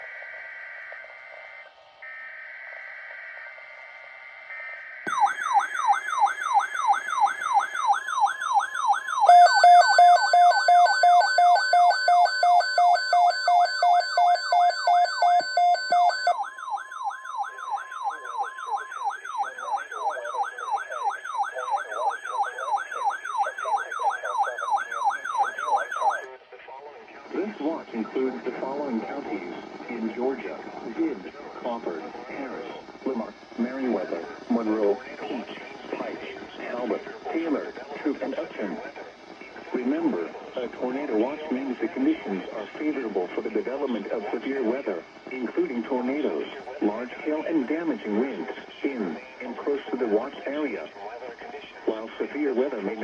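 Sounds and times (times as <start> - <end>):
alarm siren sweep: 0.0 - 26.3
steady warning tone: 4.5 - 26.3
pulsing beep: 5.1 - 26.3
broadcast voice: 17.4 - 53.0.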